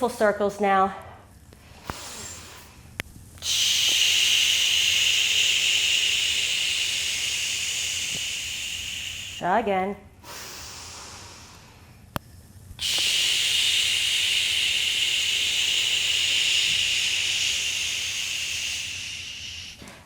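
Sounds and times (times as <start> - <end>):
steady hiss: 1.7 - 2.8, 3.4 - 9.5, 12.8 - 20.0.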